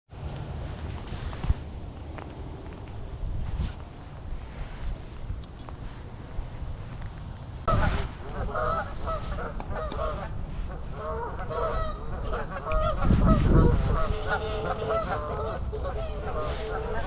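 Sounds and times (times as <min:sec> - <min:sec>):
geese honking: 0:07.7 - 0:17.0.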